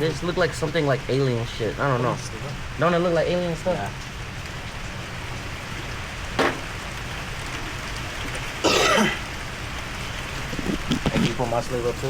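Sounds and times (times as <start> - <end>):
background hiss: 0.0 - 12.0
man clearing his throat: 8.6 - 9.3, 10.4 - 11.6.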